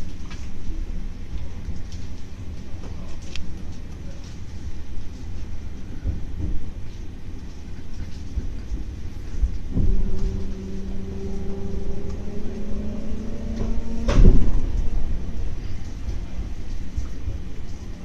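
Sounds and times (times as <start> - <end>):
train rumbling in tunnel: 0.0 - 18.0
steady hum: 8.2 - 18.0
loud thud: 13.6 - 15.1.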